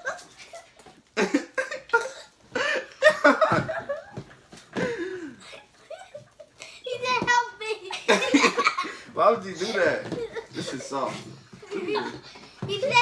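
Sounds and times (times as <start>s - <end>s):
children laughing and calling out: 5.3s - 9.0s, 9.8s - 13.0s.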